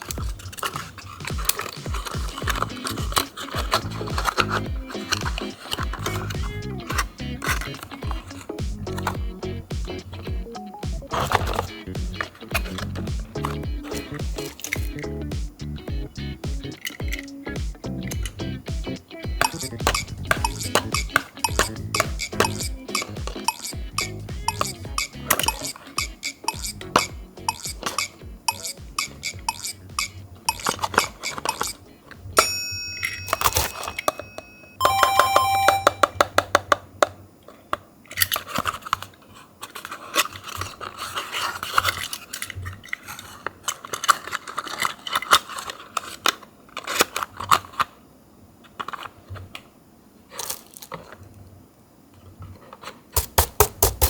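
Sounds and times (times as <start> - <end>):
toy cars rubbing and scraping: 0.0 - 9.2, 19.4 - 32.2, 38.3 - 48.0
small metallic clicks and clinks: 32.4 - 35.0
short chime-like tones: 32.4 - 36.2.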